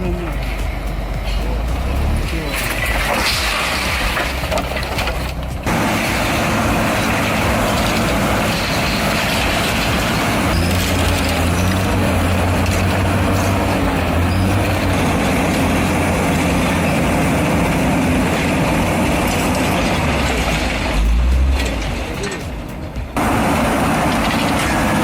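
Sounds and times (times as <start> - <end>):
diesel machinery running: 0.0 - 25.0
heavy low rumble: 0.0 - 25.0.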